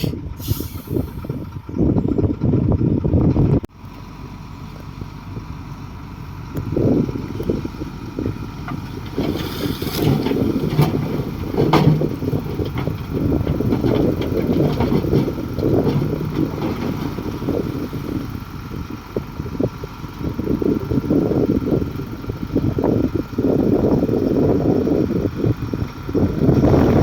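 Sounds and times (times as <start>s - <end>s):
bulldozer diesel engine rumbling: 0.0s - 27.0s.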